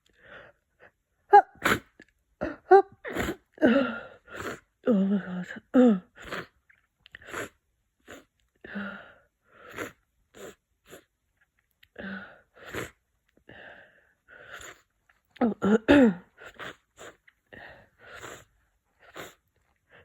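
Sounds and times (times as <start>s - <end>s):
person sniffing congested nose: 1.4s - 2.0s, 3.0s - 4.7s, 6.2s - 6.5s, 7.2s - 8.3s, 9.6s - 11.1s, 12.5s - 13.0s, 14.4s - 14.9s, 16.2s - 19.5s.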